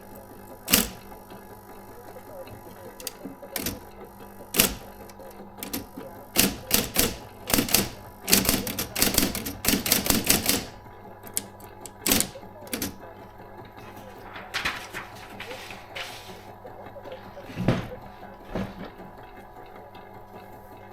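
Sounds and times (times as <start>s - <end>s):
electric typewriter key strikes: 0.6s - 1.4s, 2.4s - 13.1s.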